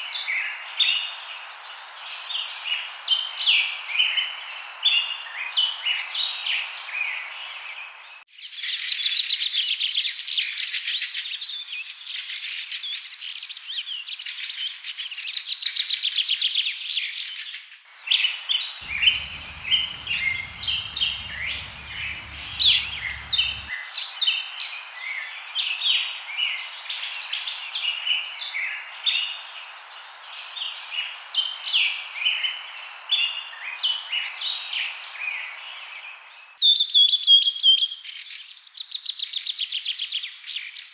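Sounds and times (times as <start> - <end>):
songbirds trilling: 18.2 - 23.7
bird chirps and whistles: 36.6 - 38.0.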